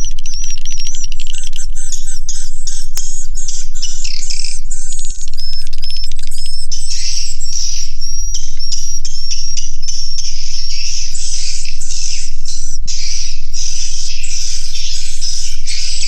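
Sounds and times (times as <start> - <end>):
swiftlets chirping and twittering: 0.0 - 16.0.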